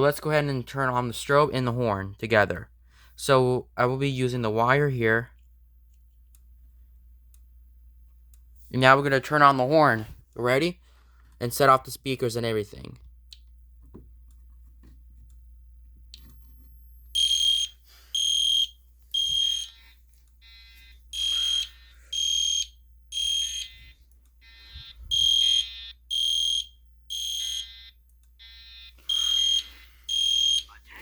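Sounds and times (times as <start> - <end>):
fire alarm horn blasts: 17.2 - 30.7.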